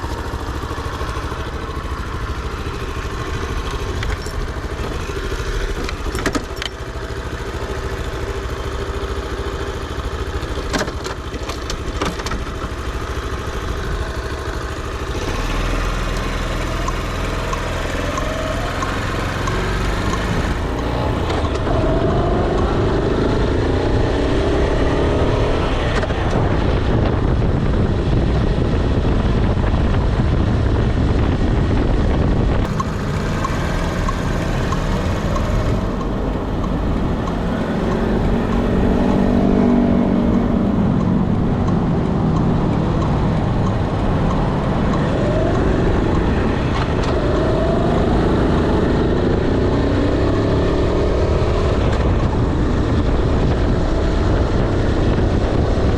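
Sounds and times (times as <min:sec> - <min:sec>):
motorcycle engine: 0:00.0 - 0:55.9
riding wind rushing: 0:19.4 - 0:49.8, 0:51.4 - 0:55.9.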